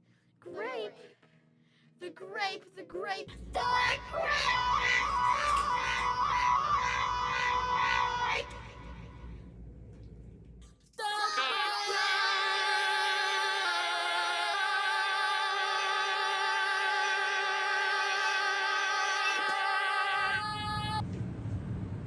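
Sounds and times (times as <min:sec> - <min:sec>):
choir holding a chord: 0:03.3 - 0:09.5, 0:11.3 - 0:20.5.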